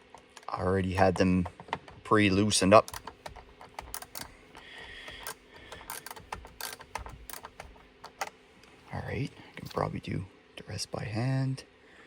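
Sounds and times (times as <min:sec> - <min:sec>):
ratcheting driver clicking: 0:02.8 - 0:08.4.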